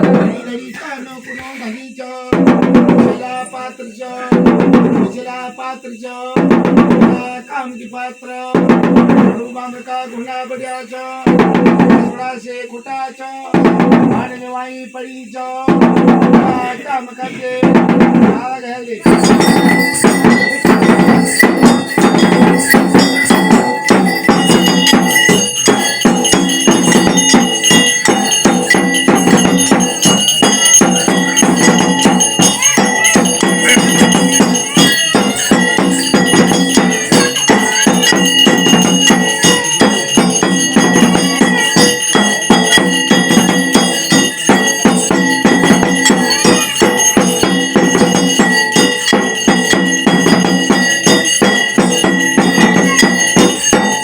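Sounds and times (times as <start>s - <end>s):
rapid drumming: 0.0s - 1.1s, 2.3s - 5.5s, 6.4s - 7.7s, 8.5s - 9.6s, 11.2s - 12.3s, 13.5s - 14.4s, 15.7s - 54.0s
bells ringing: 0.0s - 12.3s, 12.9s - 54.0s.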